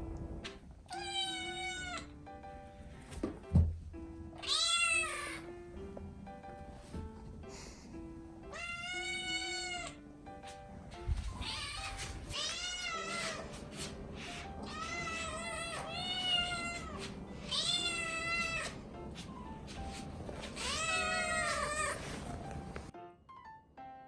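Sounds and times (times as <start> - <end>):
background music: 0.0 - 24.0
kitten meowing loudly: 0.9 - 2.1, 4.4 - 5.4, 8.5 - 10.0, 11.4 - 13.5, 14.6 - 18.7, 20.6 - 22.0.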